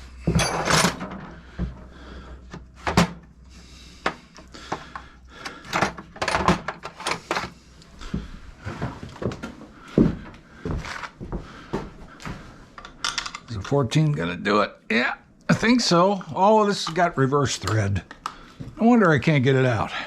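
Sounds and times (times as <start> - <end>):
hand tools clanking on metal parts: 0.2 - 1.4.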